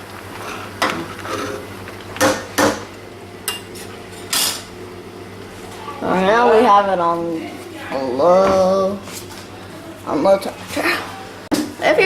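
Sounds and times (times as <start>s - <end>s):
utensil scraping pot: 0.4s - 1.7s.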